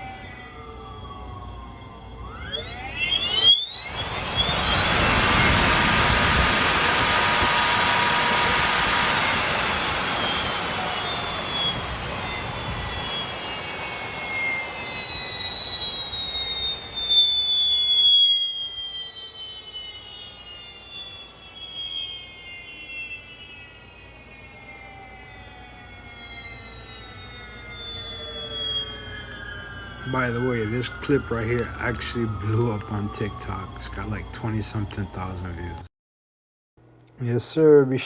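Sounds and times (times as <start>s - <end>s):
electric bike motor whining: 0.0s - 35.8s
wind and tyre noise: 3.8s - 14.9s.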